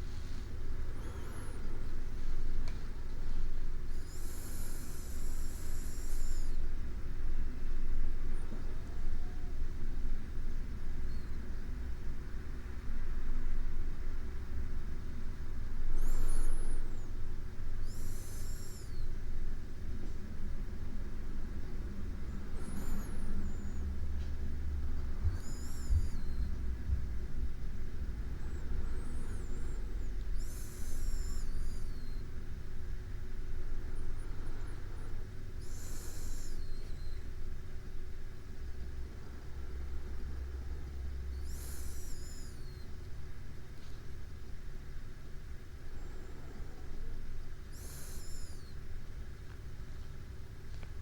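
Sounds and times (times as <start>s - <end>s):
sleeping person breathing: 0.0s - 6.6s, 17.8s - 19.0s, 25.0s - 26.4s, 28.4s - 32.2s, 33.8s - 37.2s, 41.3s - 42.8s, 47.7s - 48.7s
thin high whistle: 25.3s - 26.5s, 30.4s - 32.2s, 35.6s - 37.2s, 41.3s - 42.9s, 47.7s - 48.8s.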